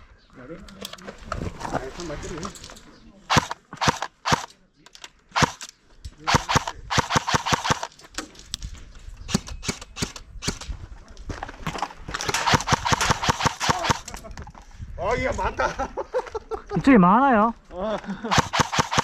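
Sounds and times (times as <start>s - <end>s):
airsoft guns firing: 3.3s - 4.5s, 5.4s - 5.7s, 6.3s - 7.9s, 9.3s - 10.7s, 12.2s - 14.1s, 18.3s - 19.0s.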